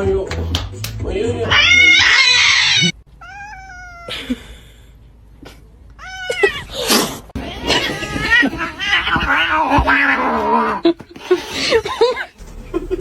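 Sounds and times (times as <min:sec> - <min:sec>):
cat yowling: 0:01.5 - 0:04.1, 0:06.0 - 0:10.8.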